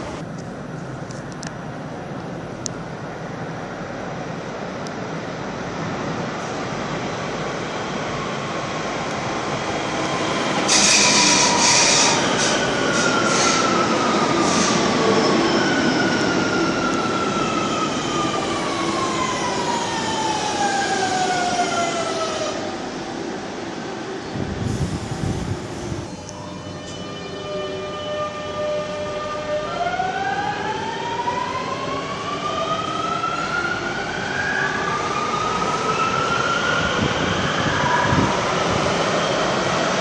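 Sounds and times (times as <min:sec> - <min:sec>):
loud high squeal: 0:10.7 - 0:16.1.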